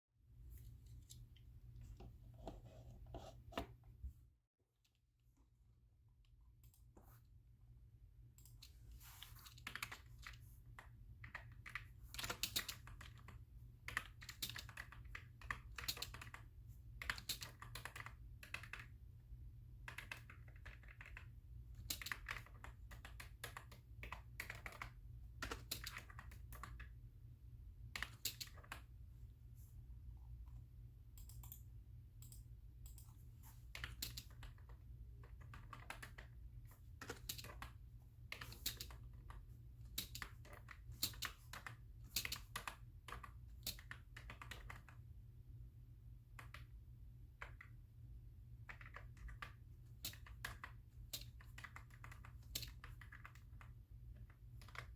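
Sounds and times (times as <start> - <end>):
low steady hum: 16.3 - 54.9.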